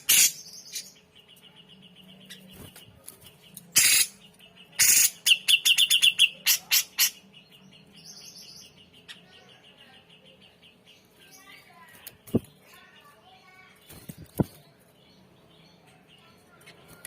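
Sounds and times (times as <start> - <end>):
harsh bird chattering: 0.0 - 1.0, 3.6 - 7.3
bird chirping rapidly: 0.0 - 11.6.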